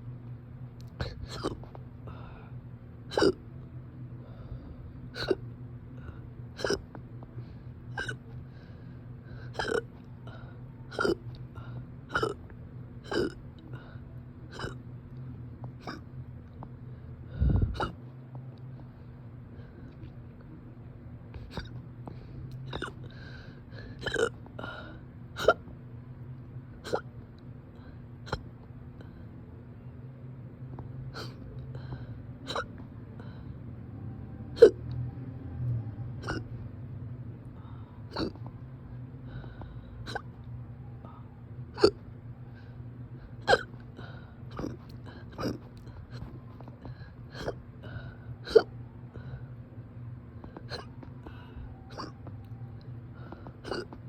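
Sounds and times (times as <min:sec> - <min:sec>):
person hiccuping: 0:00.9 - 0:01.7, 0:03.1 - 0:03.4, 0:05.1 - 0:05.5, 0:06.6 - 0:07.0, 0:07.9 - 0:08.3, 0:09.5 - 0:10.0, 0:10.9 - 0:11.4, 0:12.1 - 0:13.5, 0:14.5 - 0:14.8, 0:15.8 - 0:16.1, 0:17.6 - 0:18.0, 0:21.5 - 0:21.8, 0:22.6 - 0:23.0, 0:24.0 - 0:24.4, 0:25.4 - 0:25.7, 0:26.8 - 0:27.2, 0:28.3 - 0:28.5, 0:31.1 - 0:31.4, 0:32.4 - 0:32.8, 0:34.6 - 0:34.8, 0:36.2 - 0:36.5, 0:38.1 - 0:38.5, 0:40.0 - 0:40.4, 0:41.8 - 0:42.0, 0:43.4 - 0:43.8, 0:44.5 - 0:46.6, 0:47.3 - 0:47.6, 0:48.4 - 0:48.8, 0:50.6 - 0:51.1, 0:51.9 - 0:52.3, 0:53.4 - 0:54.0.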